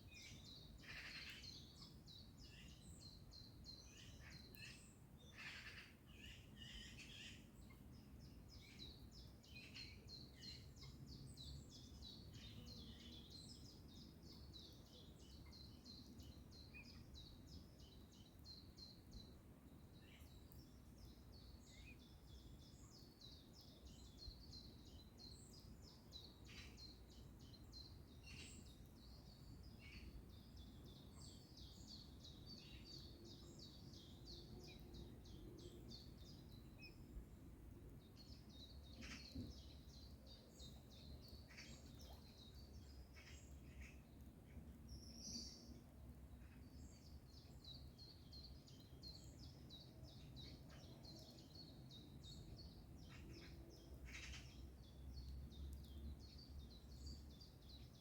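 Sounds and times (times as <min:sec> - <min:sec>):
songbirds chirping and trilling: 0:00.0 - 0:58.0.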